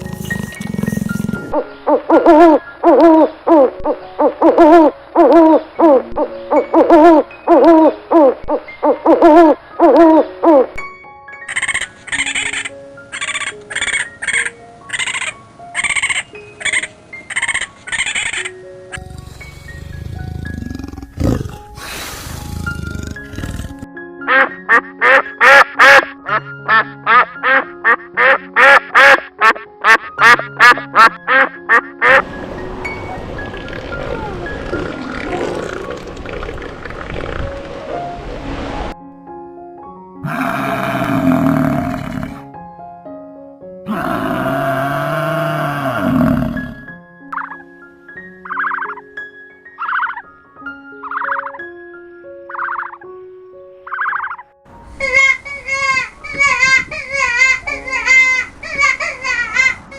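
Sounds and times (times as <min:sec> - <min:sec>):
animal hooting calls: 0:00.0 - 0:10.7
background music: 0:00.0 - 0:59.9
duck quacking: 0:24.3 - 0:32.2.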